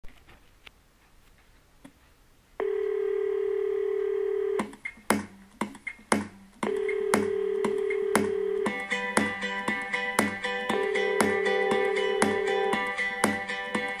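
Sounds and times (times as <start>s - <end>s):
telephone dial tone: 2.6s - 4.6s, 6.7s - 8.7s
drum beat: 4.6s - 14.0s.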